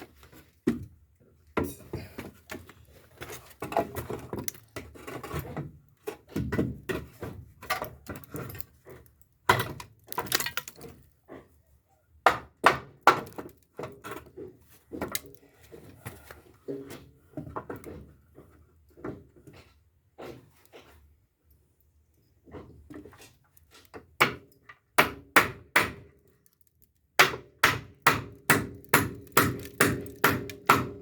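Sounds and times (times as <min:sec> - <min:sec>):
wooden knocks and clatters: 0:01.6 - 0:11.0.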